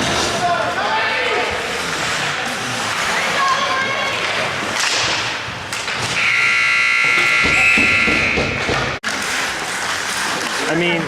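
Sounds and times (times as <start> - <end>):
crowd noise: 0.0 - 9.0
scoreboard buzzer: 6.2 - 8.6.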